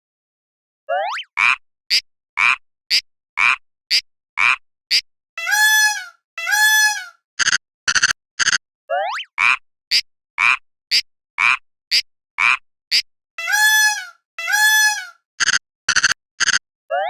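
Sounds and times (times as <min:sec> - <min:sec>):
long horn-like tones: 0:05.4 - 0:07.1, 0:13.4 - 0:15.1.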